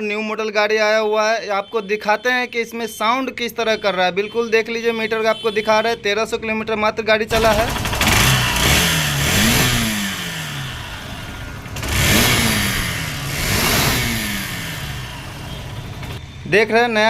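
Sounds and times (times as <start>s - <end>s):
motorcycle engine revving: 7.3s - 16.4s.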